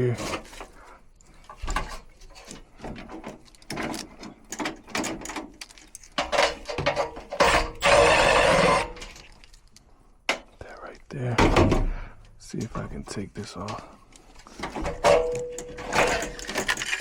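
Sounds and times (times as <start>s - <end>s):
tools clicking and knocking: 1.2s - 8.1s, 14.5s - 17.0s
rough scraping noise: 7.4s - 9.2s.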